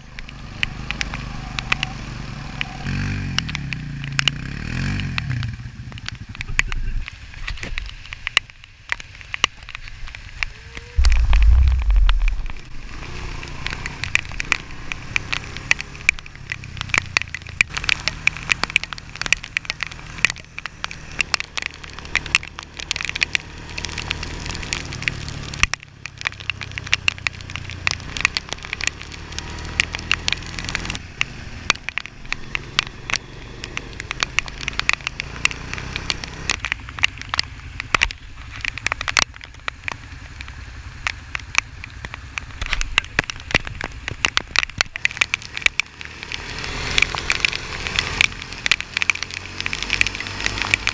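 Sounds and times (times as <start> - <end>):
atv engine running: 0.0 - 7.6, 10.6 - 50.9
rain striking camera housing: 0.0 - 50.9
loud low thump: 11.0 - 13.0.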